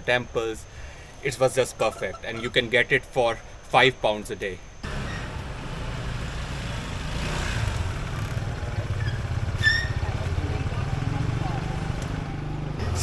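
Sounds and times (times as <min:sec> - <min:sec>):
motorbike engine running: 0:04.8 - 0:13.0.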